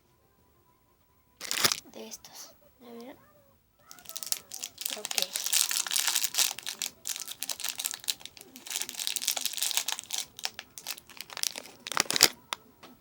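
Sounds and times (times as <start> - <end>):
plastic packaging crinkling: 1.4 - 1.8, 3.9 - 12.6.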